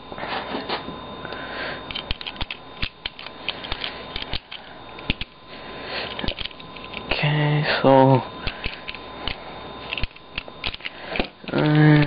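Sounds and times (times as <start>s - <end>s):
puzzle cube pieces clicking: 1.9s - 5.2s.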